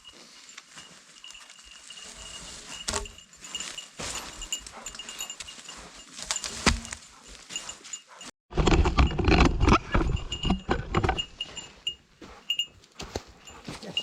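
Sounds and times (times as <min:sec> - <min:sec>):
footsteps crunching on frozen ground: 0:00.0 - 0:08.2
small bell jingling: 0:00.0 - 0:08.3, 0:10.2 - 0:12.8.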